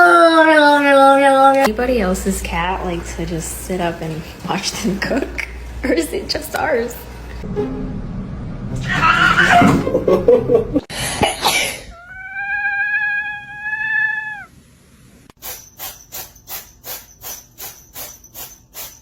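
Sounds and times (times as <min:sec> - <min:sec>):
cat meowing: 0:11.9 - 0:14.5.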